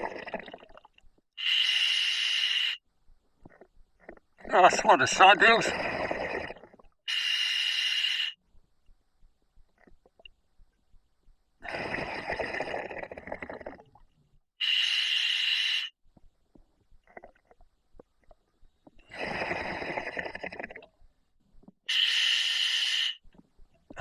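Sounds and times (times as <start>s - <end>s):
bubbling exhalations: 0.0s - 1.6s, 3.4s - 7.0s, 11.6s - 15.7s, 16.5s - 21.1s
regulator hissing inhalation: 1.4s - 2.8s, 7.1s - 8.4s, 14.6s - 16.0s, 21.9s - 23.2s.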